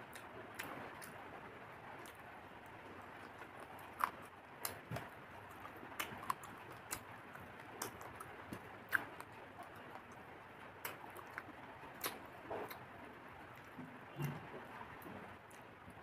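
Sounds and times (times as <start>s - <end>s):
person chewing and crunching: 2.0s - 10.2s, 10.8s - 12.9s.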